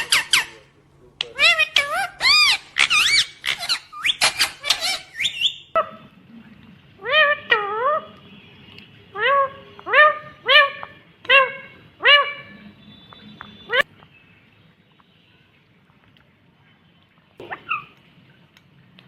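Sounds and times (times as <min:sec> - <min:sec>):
parakeet chattering: 0:00.0 - 0:00.6, 0:01.2 - 0:06.0
parakeet squawks: 0:00.0 - 0:00.6, 0:01.3 - 0:06.0, 0:09.1 - 0:13.9, 0:17.4 - 0:18.0.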